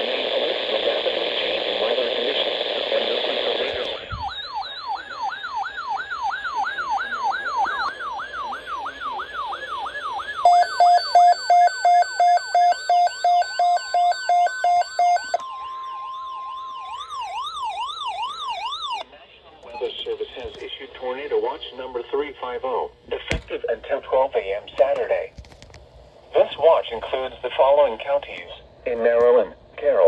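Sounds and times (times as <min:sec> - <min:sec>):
electronic alarm siren: 0:04.0 - 0:19.0.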